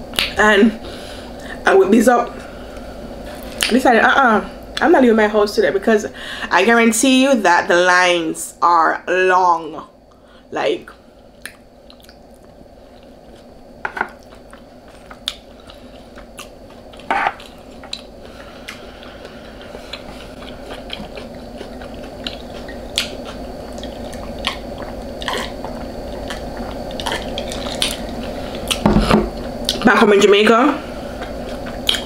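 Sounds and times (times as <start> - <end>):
steady background noise: 0.0 - 32.0
mouth clicks and crunches: 11.4 - 13.1, 19.7 - 28.8, 31.2 - 32.0
chewing food: 11.4 - 13.5, 14.1 - 28.8.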